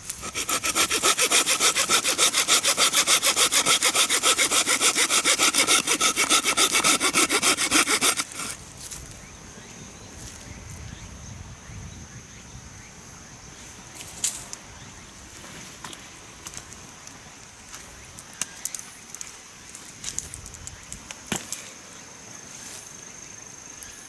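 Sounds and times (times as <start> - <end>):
hand saw cutting bamboo: 0.0 - 8.6.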